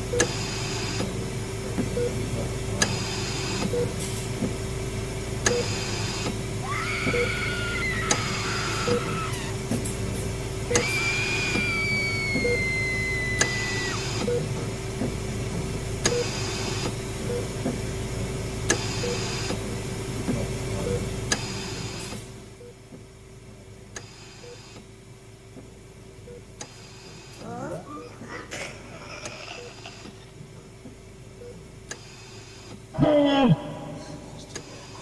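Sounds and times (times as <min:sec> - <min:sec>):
electrical hum: 0:00.0 - 0:35.0
high wail sliding downward: 0:10.8 - 0:14.0.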